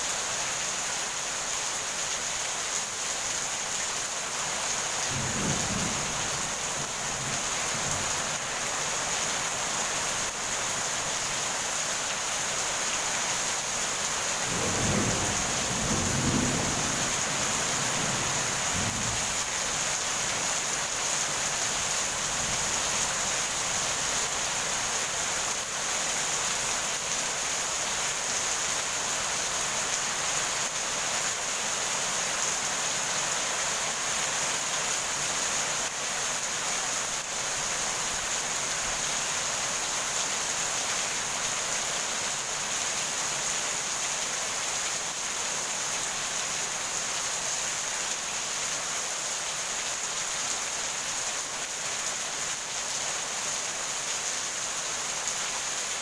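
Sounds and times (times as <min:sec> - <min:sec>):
heavy rain falling: 0:00.0 - 0:56.0
thunder rumbling: 0:05.1 - 0:08.4, 0:14.5 - 0:19.6.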